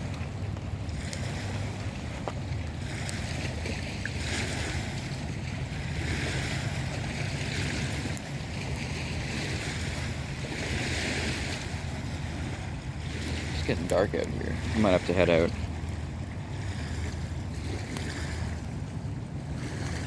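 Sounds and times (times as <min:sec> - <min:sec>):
wind rumbling on microphone: 0:00.0 - 0:20.0
fire crackling and popping: 0:07.4 - 0:09.0.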